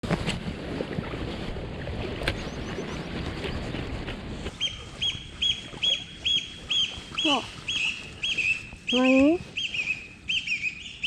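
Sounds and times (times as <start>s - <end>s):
bird calling clear notes: 4.5s - 11.0s.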